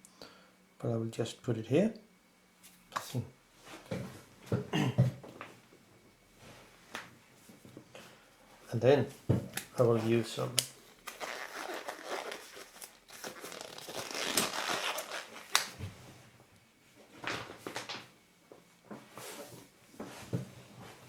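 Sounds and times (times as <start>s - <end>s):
crinkling and rustling: 9.4s - 16.0s, 17.0s - 18.2s.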